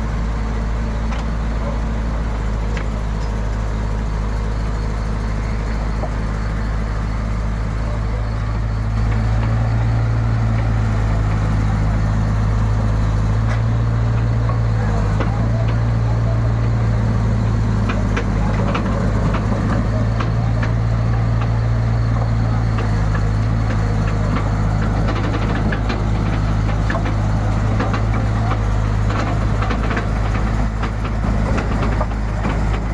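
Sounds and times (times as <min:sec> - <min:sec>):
backhoe engine running: 0:00.0 - 0:32.9.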